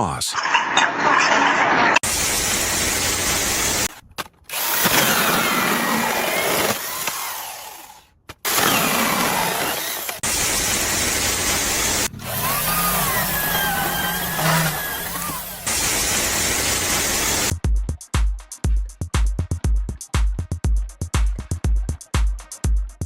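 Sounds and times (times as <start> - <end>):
power tool running: 2.0 - 3.9, 4.5 - 17.5
faint whine: 12.0 - 17.4.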